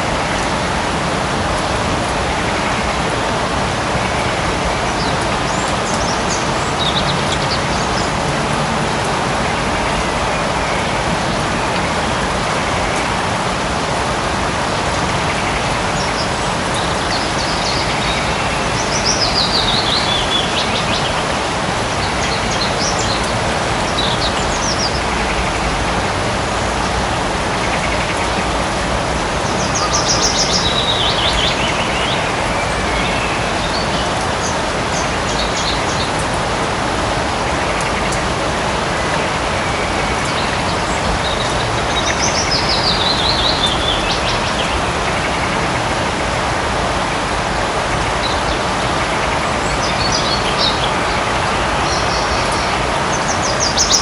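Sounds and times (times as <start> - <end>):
light rain falling: 0.0 - 54.0
birds chirping whistles: 16.0 - 21.2.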